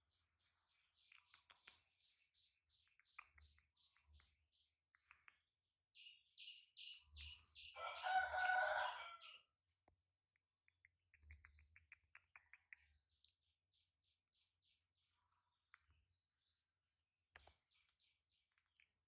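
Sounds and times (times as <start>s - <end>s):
bird chirping: 0.0s - 9.5s
faint clicks: 2.8s - 5.5s.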